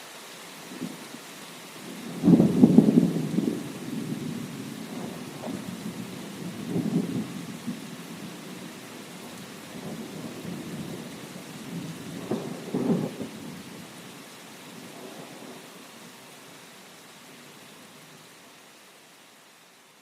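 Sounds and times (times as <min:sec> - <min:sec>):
steady rain falling: 0:00.0 - 0:20.0
low rolling thunder: 0:01.8 - 0:13.9.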